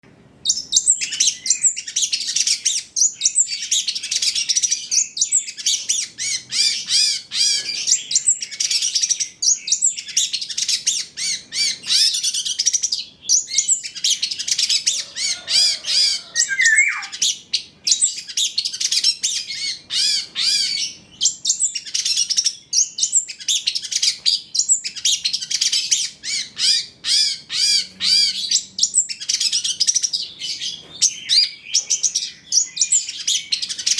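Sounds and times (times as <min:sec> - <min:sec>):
shrike singing fast chatter: 0:14.9 - 0:17.3.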